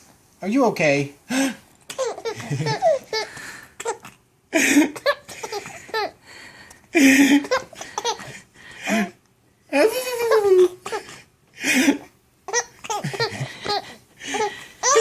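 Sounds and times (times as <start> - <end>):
baby laughing: 1.9 - 6.2, 7.0 - 8.4, 9.8 - 11.1, 12.5 - 15.0.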